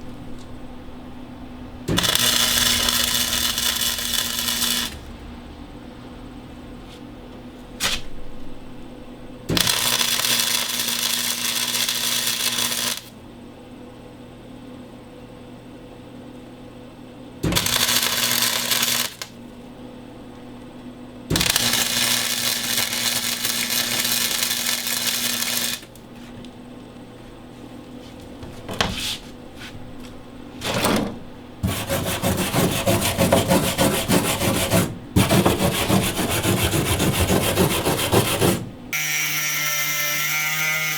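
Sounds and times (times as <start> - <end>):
steady low hum: 0.0 - 18.5, 19.2 - 39.0
arc welder crackling: 1.8 - 5.2, 9.5 - 13.2, 17.4 - 19.4, 21.3 - 26.5.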